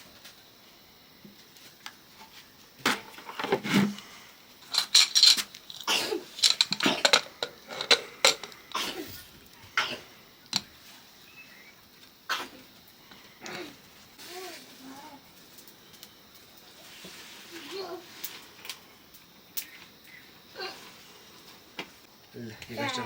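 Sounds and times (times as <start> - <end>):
kitchen utensils clattering: 6.0 - 8.6.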